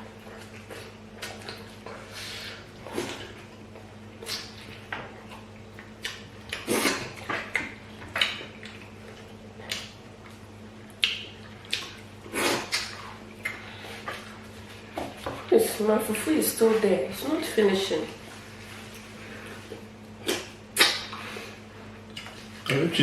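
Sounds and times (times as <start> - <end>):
faint steady hum: 0.0 - 23.0
eating clicks and wet smacks: 0.2 - 2.0, 3.0 - 15.3, 19.7 - 21.3, 22.0 - 22.8.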